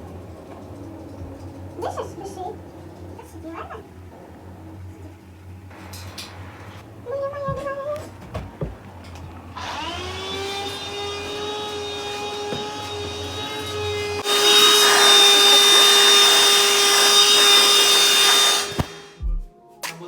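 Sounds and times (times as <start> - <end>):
rushing grinding noise: 0.0 - 7.5, 8.1 - 19.2
electric motor whining: 8.0 - 19.2.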